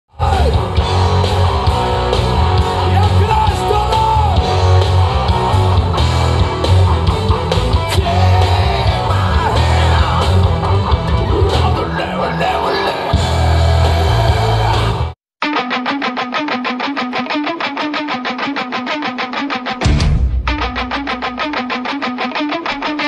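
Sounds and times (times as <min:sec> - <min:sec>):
voices singing and shouting: 0:00.1 - 0:04.7, 0:07.8 - 0:15.1
live rock music: 0:00.1 - 0:23.0.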